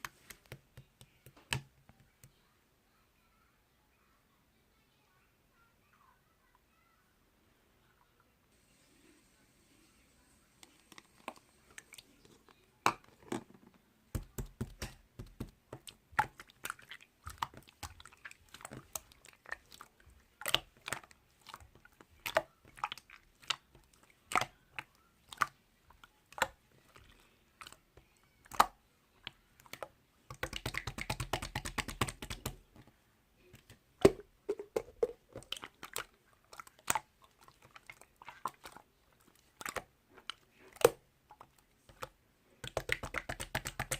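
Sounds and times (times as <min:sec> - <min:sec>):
slime wet pops and clicks: 0:14.2 - 0:19.1, 0:28.5 - 0:32.6, 0:41.9 - 0:43.9.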